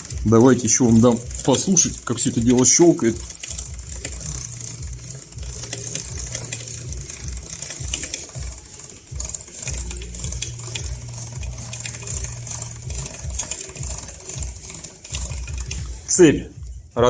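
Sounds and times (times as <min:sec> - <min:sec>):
drive chain ticking: 0:00.0 - 0:17.0
steady low hum: 0:00.0 - 0:17.0.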